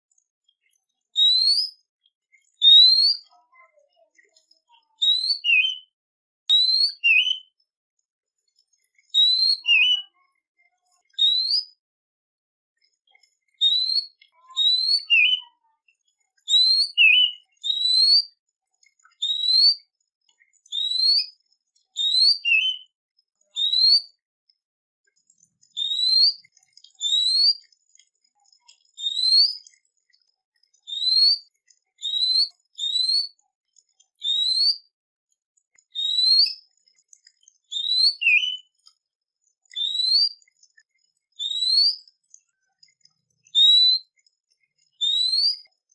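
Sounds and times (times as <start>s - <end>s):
songbird whistled notes: 1.2s - 1.8s, 2.6s - 3.3s, 5.0s - 5.9s, 6.5s - 7.5s, 9.2s - 10.2s, 11.2s - 11.8s, 13.6s - 15.5s, 16.5s - 18.4s, 19.1s - 19.9s, 20.7s - 21.3s, 22.0s - 22.9s, 23.6s - 24.1s, 25.8s - 27.6s, 29.0s - 29.6s, 30.9s - 31.4s, 32.0s - 33.3s, 34.2s - 34.9s, 36.0s - 36.6s, 37.7s - 38.7s, 39.8s - 40.4s, 41.4s - 42.0s, 45.0s - 45.6s.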